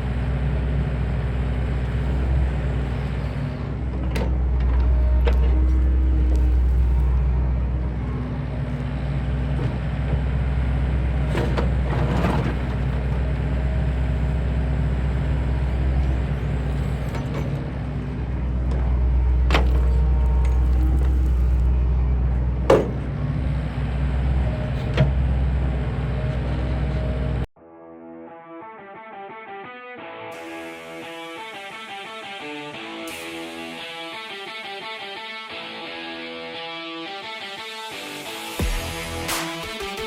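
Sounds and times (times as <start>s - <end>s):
engine rumbling: 0.0s - 27.5s.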